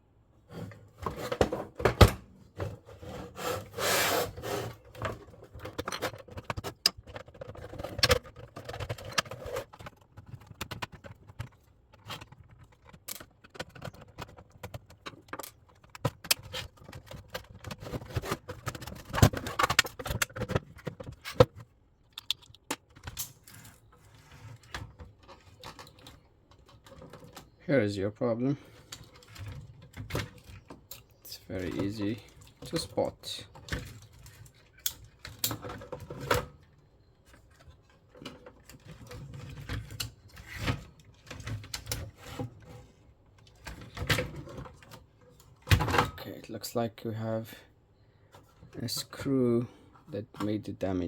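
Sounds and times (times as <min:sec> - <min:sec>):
tools handling plastic casing: 0:00.6 - 0:27.6.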